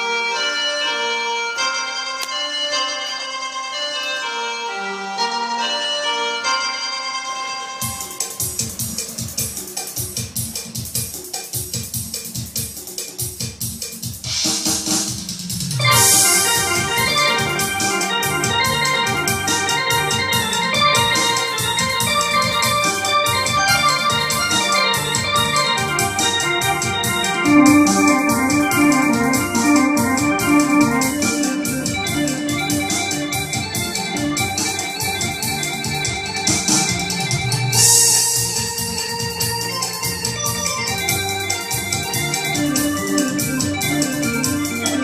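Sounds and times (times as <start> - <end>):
organ-like keyboard melody: 0.0 - 6.9, 15.8 - 37.5, 40.6 - 45.0
electronic keyboard drum beat: 8.0 - 39.5, 41.0 - 45.0.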